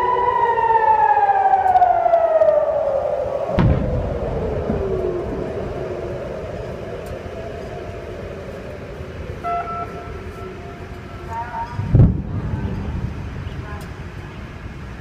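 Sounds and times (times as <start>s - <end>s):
siren winding down: 0.0s - 11.4s
steady rumbling noise: 0.0s - 15.0s
short tone: 9.4s - 11.8s.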